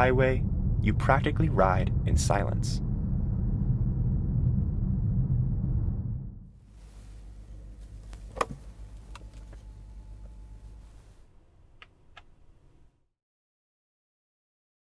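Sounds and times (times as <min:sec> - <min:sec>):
car cabin road noise: 0:06.6 - 0:12.6.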